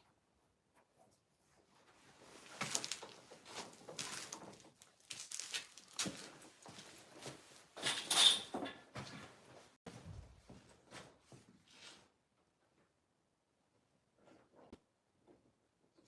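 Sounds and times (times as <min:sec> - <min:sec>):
objects being handled: 0:01.8 - 0:09.2.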